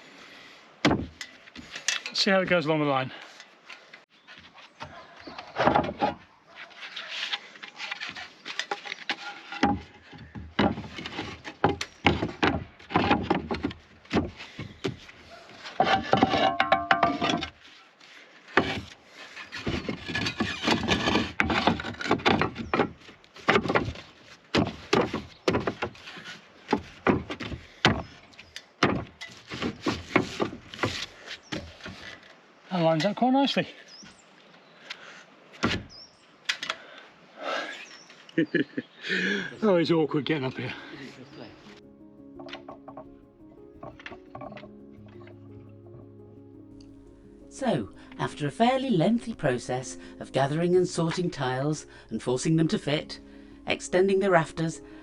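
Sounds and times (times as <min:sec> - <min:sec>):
roof tiles clunking and scraping: 0:00.8 - 0:02.3, 0:04.8 - 0:32.4, 0:43.8 - 0:46.0.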